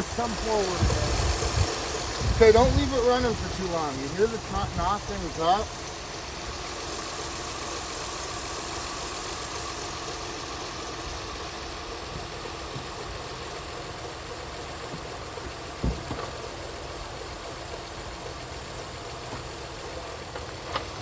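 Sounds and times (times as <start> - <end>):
car engine idling with a knock: 0.0 - 21.0
sharp thump: 15.8 - 16.4.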